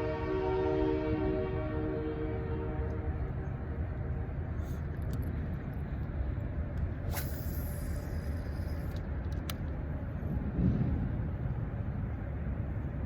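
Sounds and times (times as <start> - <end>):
held horn-like tones: 0.0 - 3.2
steady low rumble: 1.4 - 13.0.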